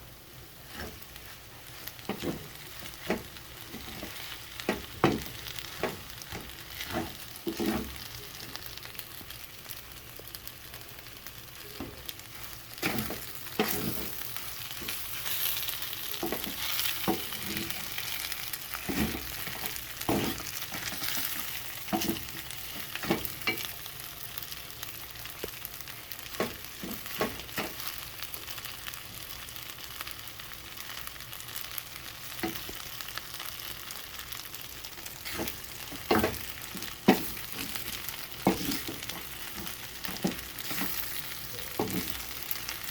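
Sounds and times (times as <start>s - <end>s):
food sizzling in a pan: 0.0s - 42.9s
utensil scraping a pan: 2.0s - 8.1s, 12.8s - 23.6s, 35.2s - 42.2s.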